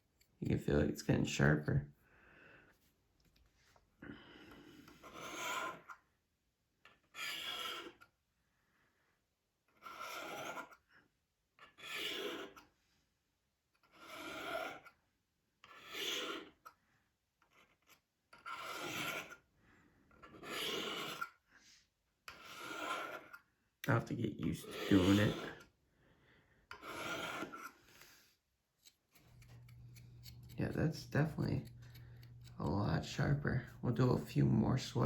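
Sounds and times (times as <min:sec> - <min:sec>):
knife scraping on ceramic rods: 0:11.7 - 0:12.6, 0:15.7 - 0:16.6, 0:18.4 - 0:19.4, 0:20.2 - 0:21.3, 0:22.3 - 0:23.3, 0:24.6 - 0:25.6, 0:26.7 - 0:28.2, 0:28.8 - 0:34.2.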